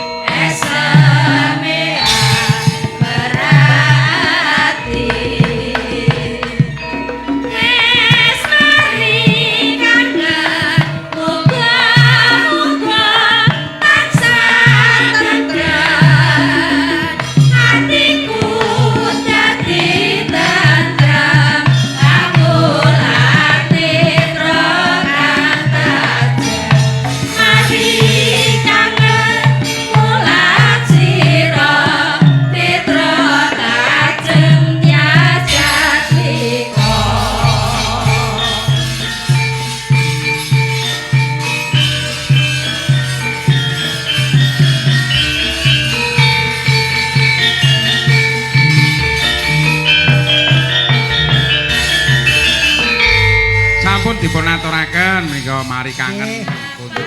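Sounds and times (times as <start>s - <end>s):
sustained tones: 0.0s - 11.2s, 34.4s - 41.5s, 48.5s - 57.0s
hand drum strokes: 0.3s - 42.9s, 48.5s - 57.0s
person singing with vibrato: 33.2s - 40.2s.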